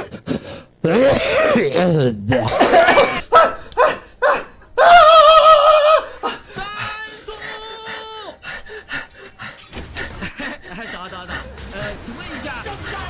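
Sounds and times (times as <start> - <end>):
person making wordless laughing sounds: 0.9 - 3.4.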